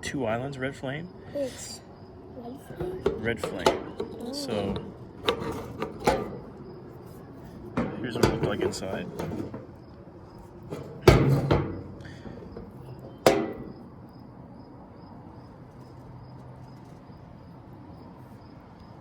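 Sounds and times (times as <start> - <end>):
crickets chirping: 0.0 - 19.0
hard objects knocking: 2.7 - 9.9, 10.5 - 14.0.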